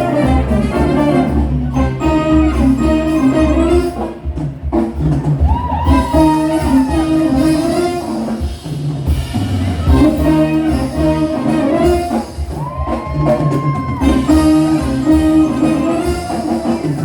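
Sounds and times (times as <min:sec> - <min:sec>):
held melody notes: 0:00.0 - 0:04.7, 0:14.1 - 0:17.0
bass line: 0:00.0 - 0:17.0
drums: 0:00.0 - 0:17.0.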